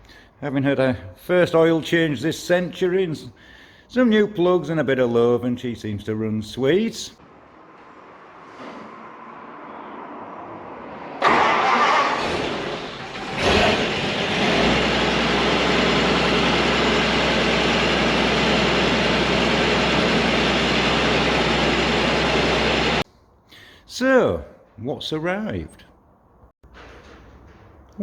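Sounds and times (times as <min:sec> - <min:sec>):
vehicle engine starting and running: 0:07.8 - 0:23.0.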